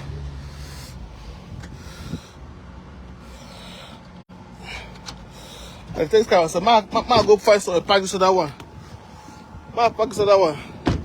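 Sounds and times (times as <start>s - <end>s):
person breathing close: 0.3s - 2.6s, 3.2s - 5.9s.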